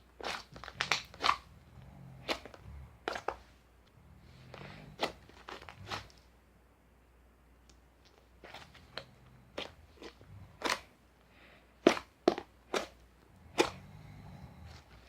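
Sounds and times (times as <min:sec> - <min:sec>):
crisp crunches: 0:00.2 - 0:03.4, 0:04.5 - 0:06.2.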